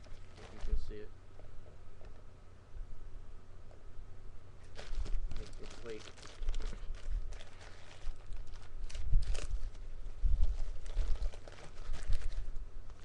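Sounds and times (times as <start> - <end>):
plastic bags crinkling: 0.0 - 1.0, 4.6 - 9.8, 10.4 - 13.0.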